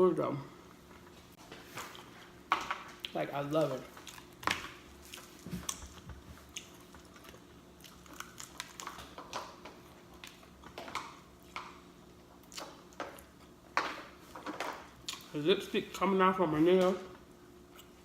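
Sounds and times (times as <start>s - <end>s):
person chewing food: 3.9s - 13.6s, 14.9s - 15.3s.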